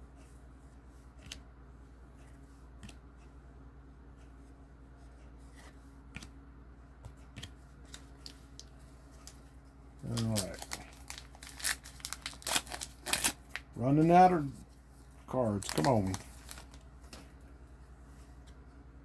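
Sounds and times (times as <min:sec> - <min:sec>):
steady low hum: 0:00.0 - 0:19.0
cards being flipped: 0:05.6 - 0:06.4, 0:10.0 - 0:13.7.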